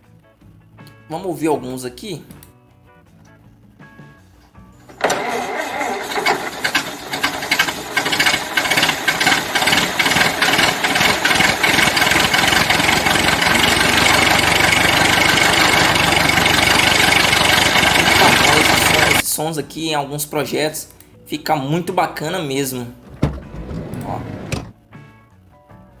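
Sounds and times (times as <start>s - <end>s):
car engine running: 4.9s - 19.2s, 23.0s - 24.7s.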